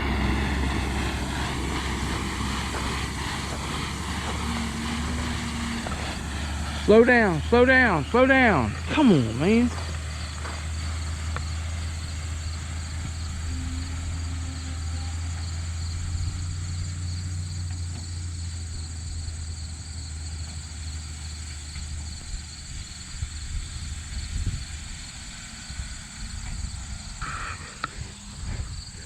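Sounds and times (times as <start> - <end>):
insects chirping: 0.0 - 29.0
truck engine droning: 0.0 - 29.0.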